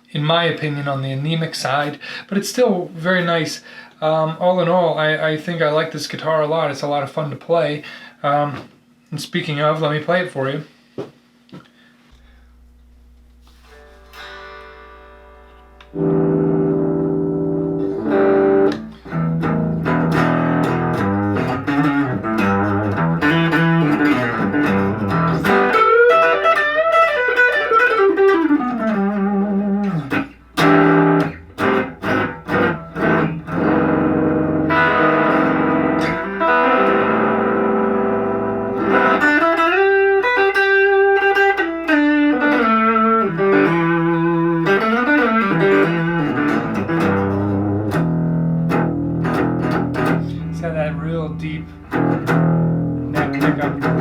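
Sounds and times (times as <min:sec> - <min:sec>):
electric guitar chords and lines: 0:12.2 - 0:54.0.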